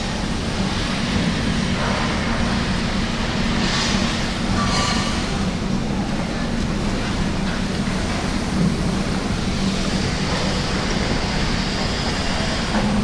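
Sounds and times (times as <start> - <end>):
low machine hum: 0.0 - 13.0.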